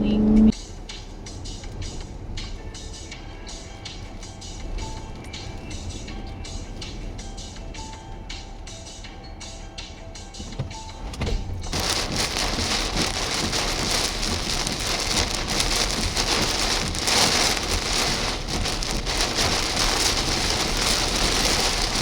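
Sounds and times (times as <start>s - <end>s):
heavy rain: 11.7s - 22.0s.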